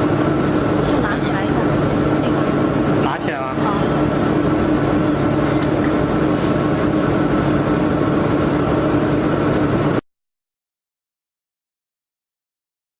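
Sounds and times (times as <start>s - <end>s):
machinery humming: 0.0s - 10.0s.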